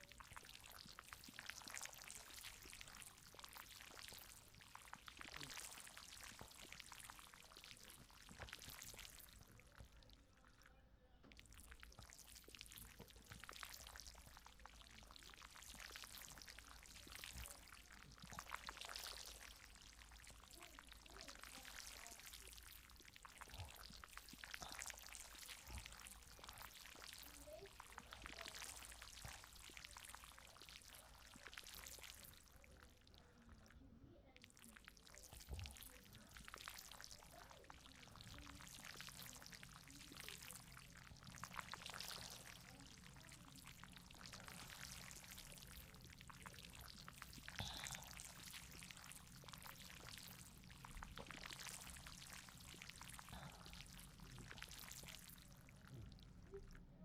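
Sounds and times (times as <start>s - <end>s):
rain patter and hiss: 15.0s - 31.8s
low steady hum: 40.0s - 49.8s.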